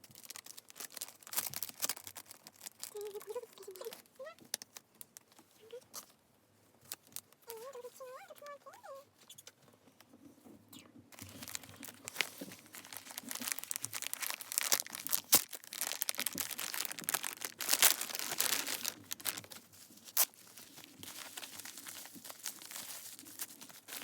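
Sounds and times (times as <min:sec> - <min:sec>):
packaging crinkling and rustling: 0:00.0 - 0:06.2, 0:06.8 - 0:08.4, 0:11.1 - 0:24.0
sharp packaging snaps: 0:11.2 - 0:20.4.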